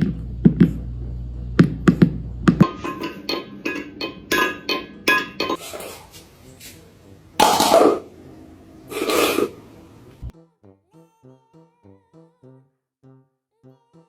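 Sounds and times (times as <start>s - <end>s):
dishes clinking: 2.6s - 6.2s, 7.4s - 8.1s.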